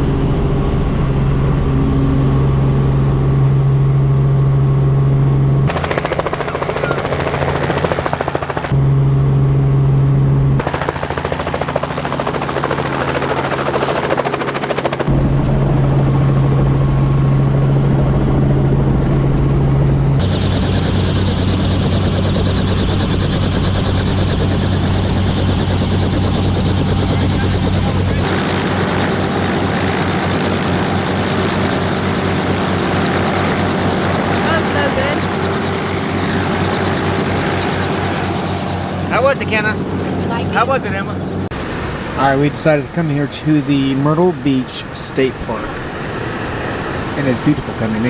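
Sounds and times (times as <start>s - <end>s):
helicopter drone: 0.0s - 48.0s
rotor blades chopping: 5.7s - 8.8s, 10.6s - 15.1s, 20.2s - 41.5s.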